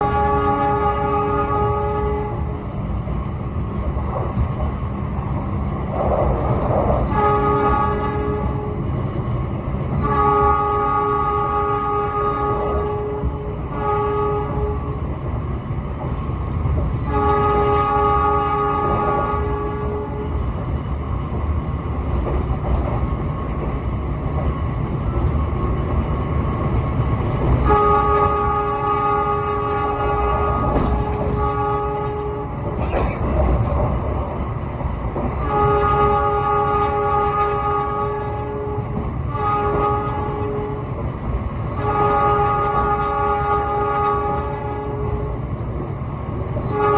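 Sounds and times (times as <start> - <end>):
train horn blast: 0.0 - 2.7, 7.0 - 8.9, 9.9 - 15.1, 16.9 - 20.4, 27.6 - 33.3, 35.4 - 41.0, 41.7 - 45.4, 46.6 - 46.9
train running rumble: 0.0 - 46.9.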